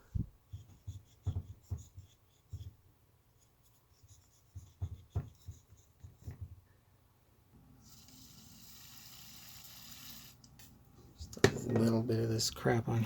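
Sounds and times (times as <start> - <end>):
cotton swab scratching: 0.4 - 6.4
soft knocks: 0.5 - 2.8.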